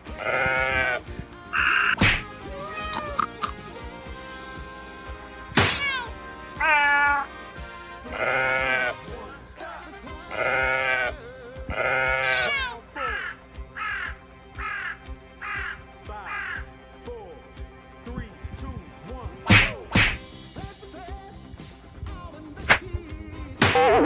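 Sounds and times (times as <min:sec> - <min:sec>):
drawn-out bleating calls: 0:00.0 - 0:16.7
background music: 0:00.0 - 0:24.0
short falling cries: 0:01.6 - 0:03.6, 0:05.6 - 0:07.3, 0:10.3 - 0:16.6.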